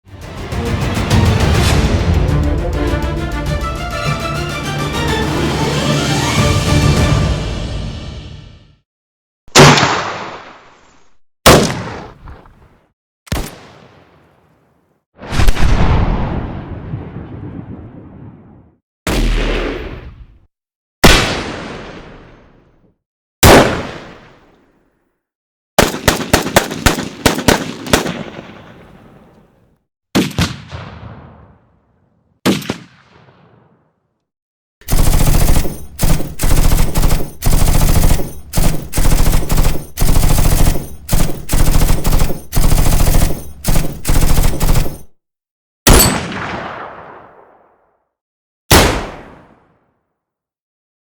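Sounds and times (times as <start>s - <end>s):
rifle gunshots: 11.5s - 12.1s, 25.8s - 28.6s, 34.8s - 45.1s, 45.9s - 47.2s
automatic gunfire bursts: 25.8s - 28.2s, 34.8s - 45.1s.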